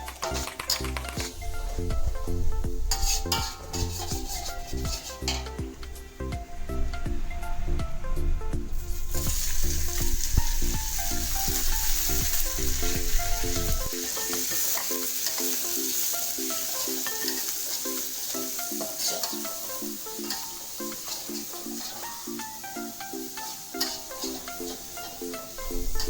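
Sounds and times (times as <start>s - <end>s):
small crackles: 0.0s - 1.5s
food sizzling in hot oil: 0.0s - 7.5s, 8.2s - 26.0s
background music repeating notes: 0.0s - 26.0s.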